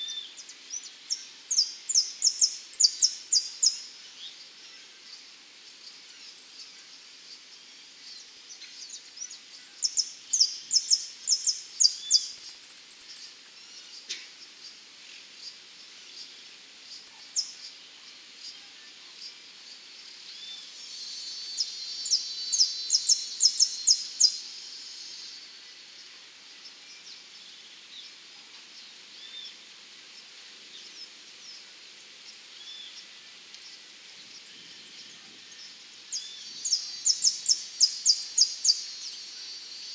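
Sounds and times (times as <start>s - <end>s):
finch song: 0.0s - 39.9s.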